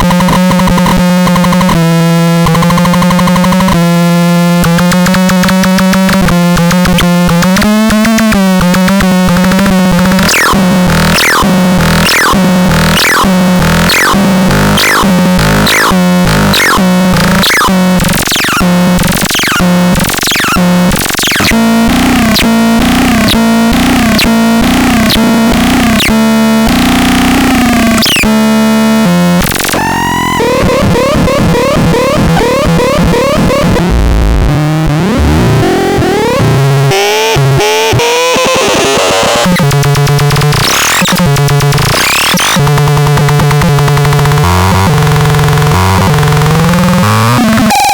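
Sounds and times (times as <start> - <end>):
synthesizer sweeps and warbling: 6.6 - 33.9.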